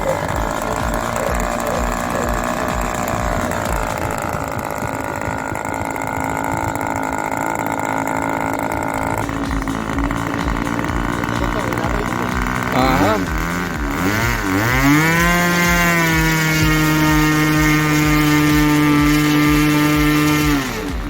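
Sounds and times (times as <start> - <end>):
model airplane engine droning: 0.0 - 21.0.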